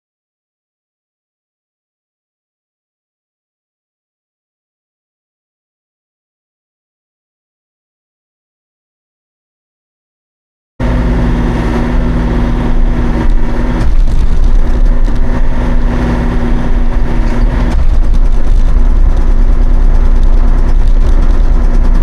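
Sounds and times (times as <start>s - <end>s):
mini excavator running: 10.8s - 22.0s.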